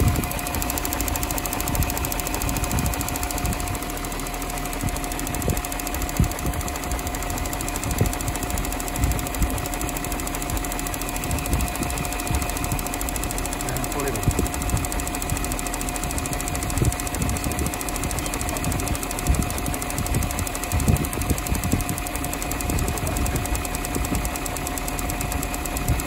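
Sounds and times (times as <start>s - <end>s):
dull low thumps: 0.0s - 9.6s
car engine idling: 0.0s - 26.0s
thin steady whine: 0.0s - 26.0s.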